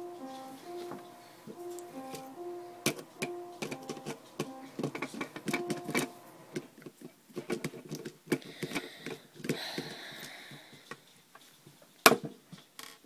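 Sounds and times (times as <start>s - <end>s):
piano notes: 0.0s - 6.8s.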